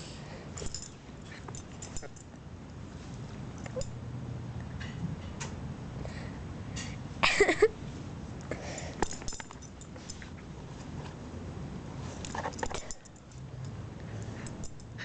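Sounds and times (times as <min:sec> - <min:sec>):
clicks and rustles: 0:00.6 - 0:04.0, 0:08.4 - 0:11.2, 0:12.0 - 0:15.0.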